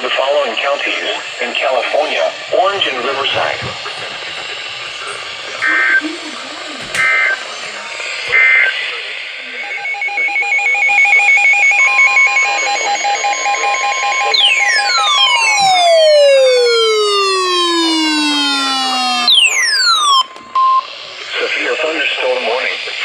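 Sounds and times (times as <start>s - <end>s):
warbling data bursts: 9.5s - 21.0s
falling electronic whistle: 11.7s - 20.9s
steady electronic tone: 13.9s - 21.1s
fast warbling alert tone: 14.3s - 20.3s.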